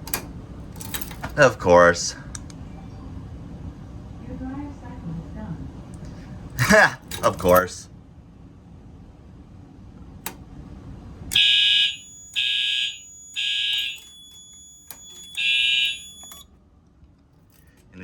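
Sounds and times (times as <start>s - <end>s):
click: 2.3s - 2.6s, 10.2s - 10.4s, 13.7s - 15.4s, 16.2s - 16.5s
fire alarm horn blasts: 11.3s - 16.4s.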